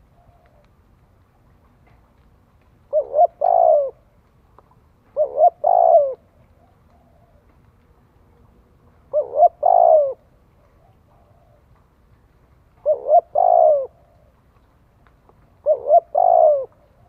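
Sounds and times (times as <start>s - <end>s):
dove cooing: 0.0s - 0.7s, 2.9s - 4.1s, 5.1s - 7.6s, 9.0s - 11.8s, 12.8s - 14.4s, 15.5s - 17.0s.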